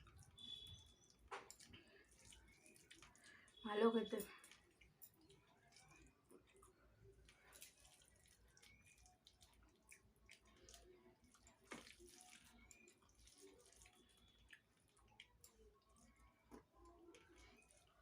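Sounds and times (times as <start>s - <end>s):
wet eating clicks and smacks: 0.0s - 3.3s, 4.5s - 18.0s.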